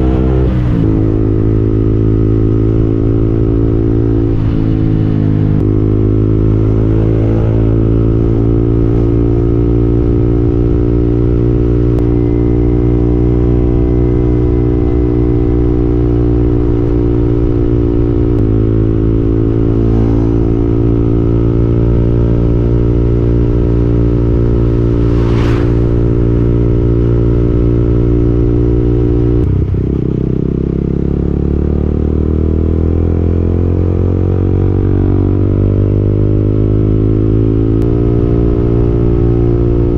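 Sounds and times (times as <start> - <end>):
motorcycle engine running: 0.0 - 39.9
brief rush of noise: 24.6 - 26.6.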